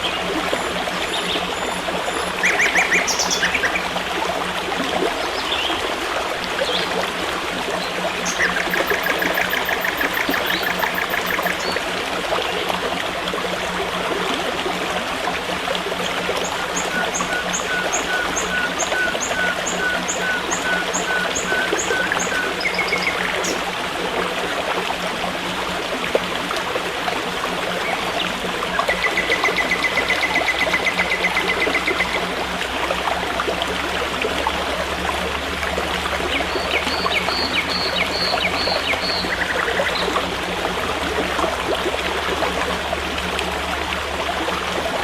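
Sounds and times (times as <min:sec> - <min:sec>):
stream running: 0:00.0 - 0:45.0
birds calling: 0:01.0 - 0:03.9, 0:07.8 - 0:11.8, 0:16.4 - 0:23.7, 0:27.9 - 0:32.3.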